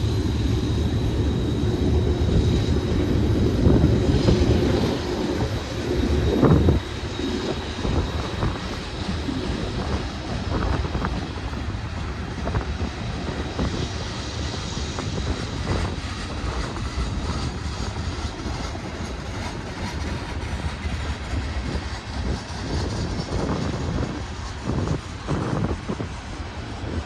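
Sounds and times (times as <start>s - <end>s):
train wheels rumbling on rail: 0.0s - 27.0s.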